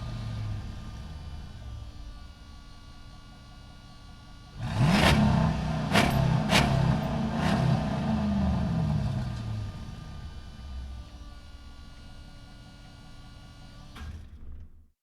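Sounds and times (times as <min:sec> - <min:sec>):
truck engine revving: 0:04.6 - 0:11.3.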